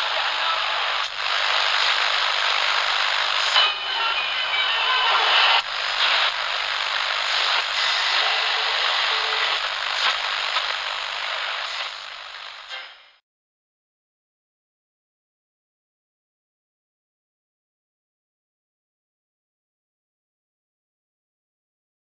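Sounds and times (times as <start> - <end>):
radio static hiss: 0.0 - 13.2.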